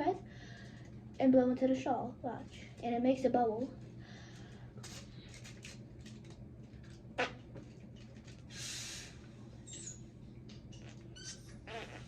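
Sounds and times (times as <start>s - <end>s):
person blowing through a straw: 11.7s - 12.0s.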